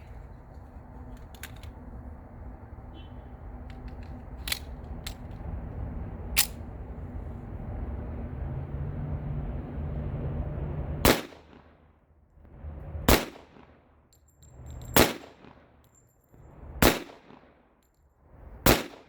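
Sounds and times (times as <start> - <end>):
pistol metallic clicks: 1.0 - 1.9, 3.6 - 5.5, 6.3 - 6.6.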